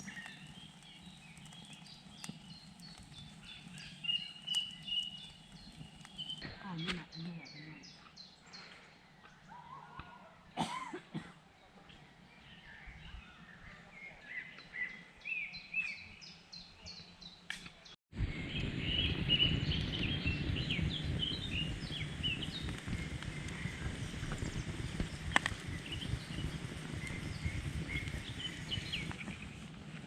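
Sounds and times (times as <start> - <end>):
crackling noise bed: 0.0 - 7.1, 18.2 - 30.0
songbirds chirping: 0.0 - 29.8.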